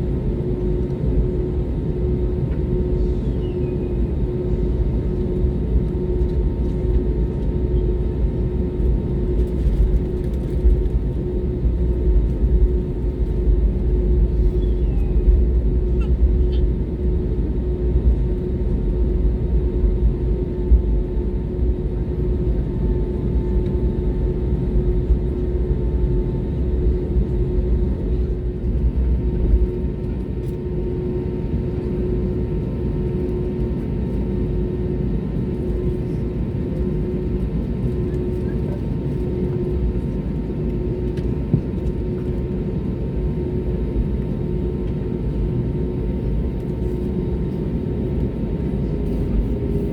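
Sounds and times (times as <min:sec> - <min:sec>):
aircraft cabin engine rumble: 0:00.0 - 0:49.9.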